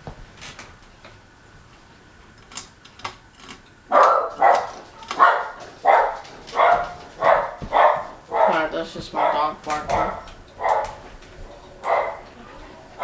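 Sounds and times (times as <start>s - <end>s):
dog barking: 3.9s - 12.4s.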